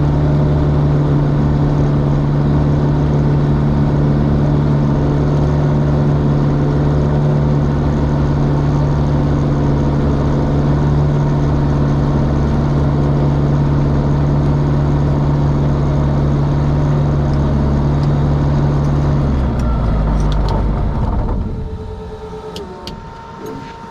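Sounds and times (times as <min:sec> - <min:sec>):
aircraft engine running: 0:00.0 - 0:23.9
engine winding down: 0:01.8 - 0:23.9
faint hum: 0:17.0 - 0:23.9
clicks: 0:18.8 - 0:23.9.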